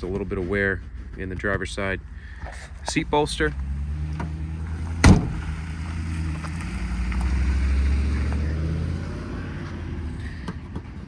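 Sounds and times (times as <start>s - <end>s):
diesel engine idling: 0.0s - 11.0s
truck door shutting: 3.6s - 5.8s.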